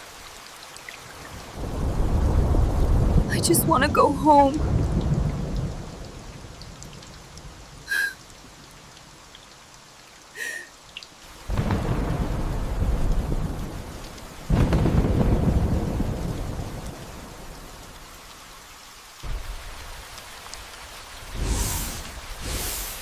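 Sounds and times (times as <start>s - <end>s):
heavy rain falling: 0.0s - 23.0s
thunder rolling: 11.5s - 17.3s, 21.2s - 23.0s.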